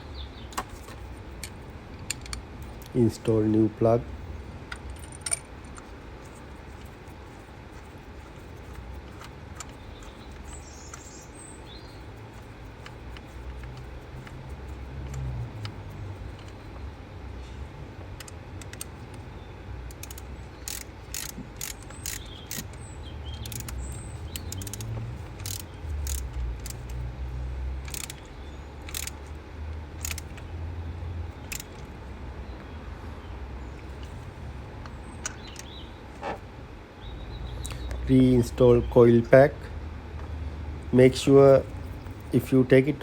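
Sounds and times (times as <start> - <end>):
steady low rumble: 0.0 - 43.0
ratchet wrench clicking: 1.4 - 2.4, 4.7 - 7.4, 8.6 - 11.2, 12.3 - 16.7, 18.2 - 19.2, 19.9 - 27.1, 27.8 - 29.4, 30.0 - 30.4, 31.4 - 31.9.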